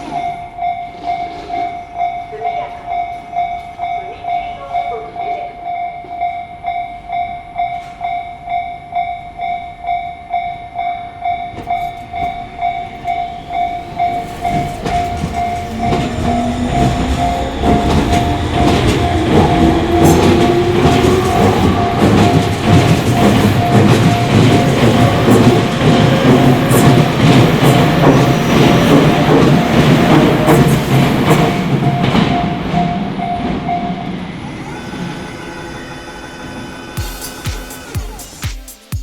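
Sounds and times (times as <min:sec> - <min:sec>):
level crossing bell ringing: 0:00.0 - 0:27.4
electric train passing: 0:00.0 - 0:38.4
train motor whine: 0:11.5 - 0:32.8.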